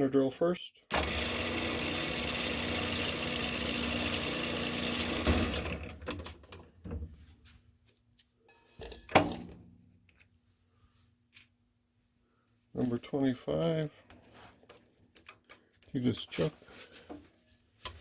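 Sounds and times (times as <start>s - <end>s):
drill machine winding down: 0.9s - 6.0s.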